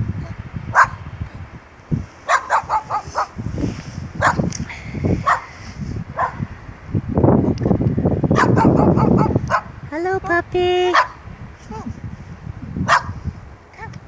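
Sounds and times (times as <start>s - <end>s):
dog barking in sharp yips: 2.3s - 3.3s, 5.2s - 5.5s, 6.2s - 6.4s, 8.4s - 9.7s, 10.9s - 11.2s, 12.9s - 13.1s.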